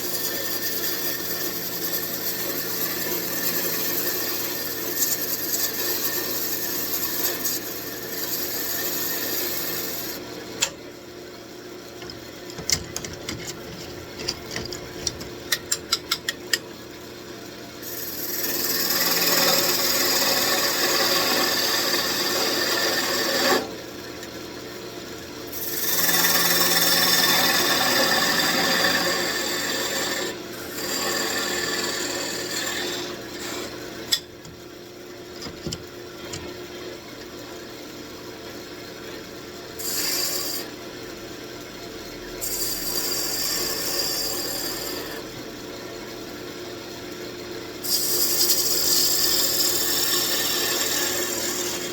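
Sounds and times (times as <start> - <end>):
wood scraping on a lathe: 0.0 - 10.2, 12.0 - 15.4, 17.8 - 23.7, 25.5 - 33.8, 39.8 - 40.7, 42.4 - 45.3, 47.8 - 51.9.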